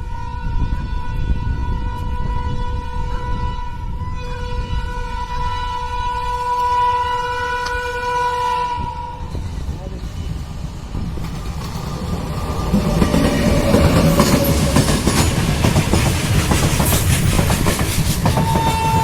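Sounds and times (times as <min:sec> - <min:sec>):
train wheels clattering: 0:09.2 - 0:19.0.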